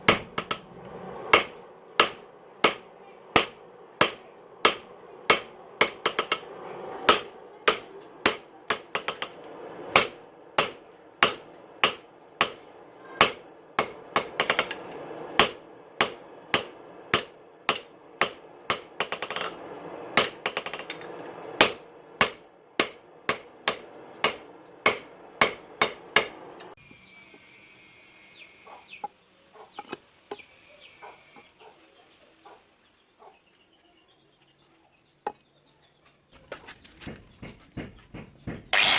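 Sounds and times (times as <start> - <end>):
hammer striking steel on anvil: 0.0 - 12.6, 13.2 - 14.8, 15.4 - 19.6, 20.2 - 26.6.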